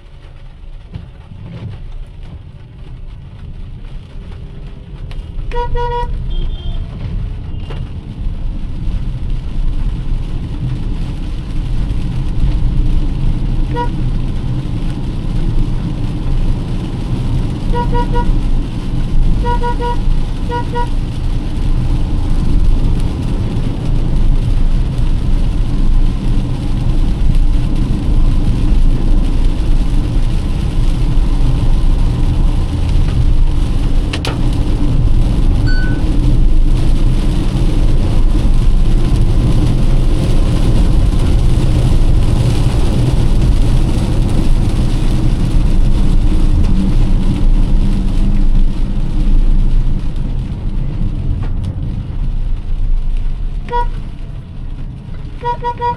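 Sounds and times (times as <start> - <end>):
car engine and road noise: 0.0 - 55.9
heavy rain: 0.0 - 55.9.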